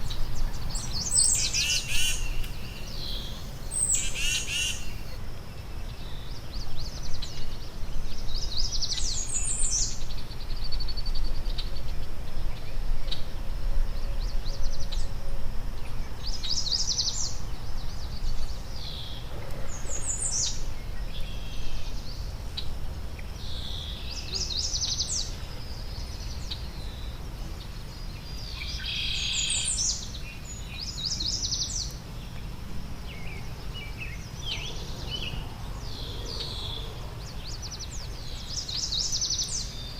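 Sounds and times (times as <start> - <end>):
songbirds calling: 0.0 - 5.2.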